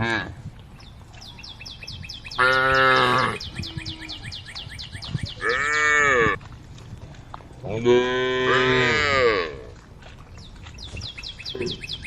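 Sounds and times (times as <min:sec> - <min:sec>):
small birds chirping: 0:00.6 - 0:06.1, 0:10.0 - 0:12.0
cow mooing: 0:02.4 - 0:04.2, 0:05.4 - 0:06.4, 0:07.8 - 0:09.8.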